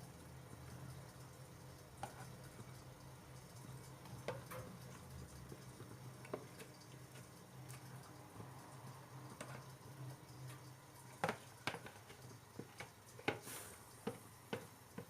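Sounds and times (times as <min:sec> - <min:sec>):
spoon tapping and scraping bowl: 0:02.0 - 0:02.4, 0:09.4 - 0:09.7.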